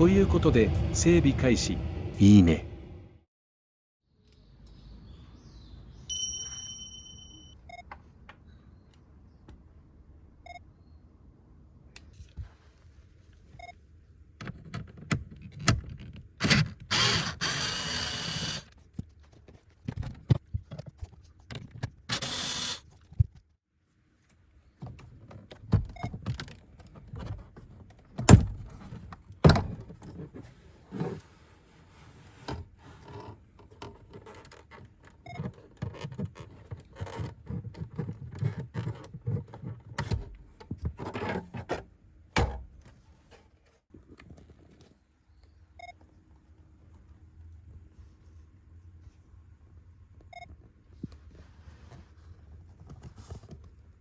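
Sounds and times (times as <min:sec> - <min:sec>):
hands and tools on car trim: 0:24.3 - 0:45.0.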